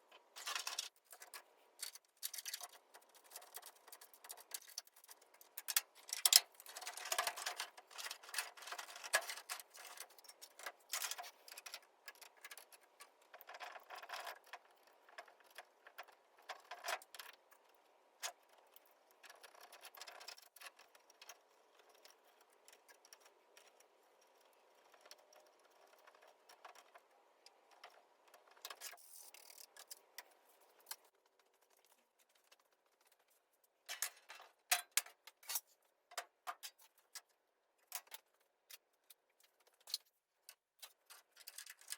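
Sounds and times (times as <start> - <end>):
tools clicking and rattling: 0.4 - 17.3.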